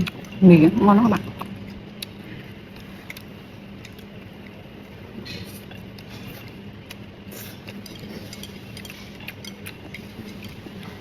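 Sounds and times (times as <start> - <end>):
utensils clinking on dishes: 7.6 - 11.0.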